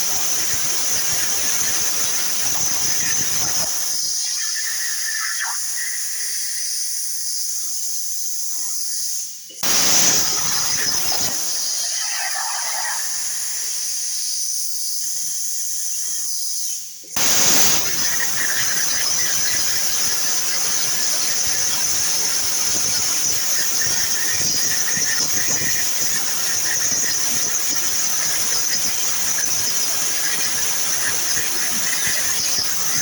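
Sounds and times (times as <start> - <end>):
steady high hiss: 0.0 - 7.5, 9.6 - 15.2, 17.2 - 33.0
plasma arc cutting hiss: 9.6 - 13.0, 17.2 - 33.0.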